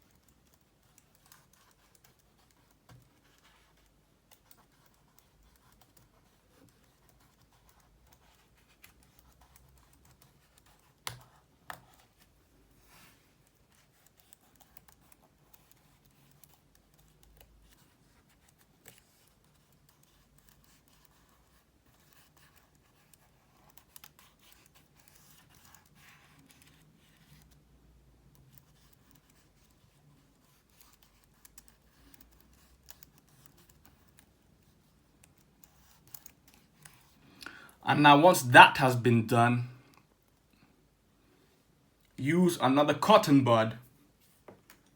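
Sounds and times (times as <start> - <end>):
cotton bud scratching keyboard keys: 0.0 - 12.2, 13.3 - 37.2.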